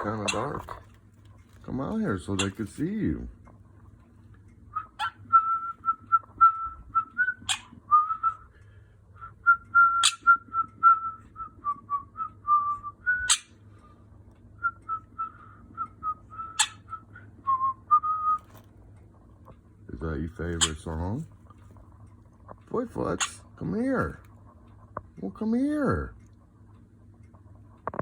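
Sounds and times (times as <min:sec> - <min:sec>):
cockatiel whistling: 0:04.7 - 0:08.4, 0:09.2 - 0:13.6, 0:14.6 - 0:18.6.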